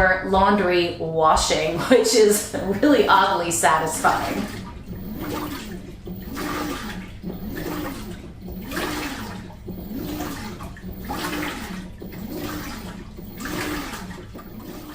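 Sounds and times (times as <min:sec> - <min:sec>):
washing machine motor hum: 0:00.0 - 0:14.9
water sloshing in washing machine: 0:00.0 - 0:14.9.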